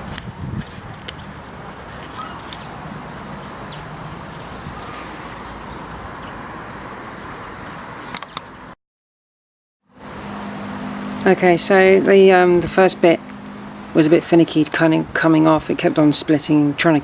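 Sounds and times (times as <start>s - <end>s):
steady background noise: 0.0s - 8.8s
faint bird chirps: 1.5s - 6.4s.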